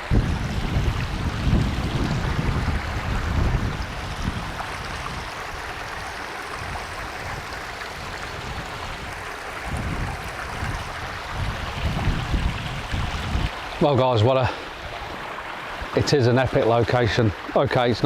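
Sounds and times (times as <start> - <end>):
wind buffeting microphone: 0.0 - 13.6
waterfall rushing: 0.0 - 18.0.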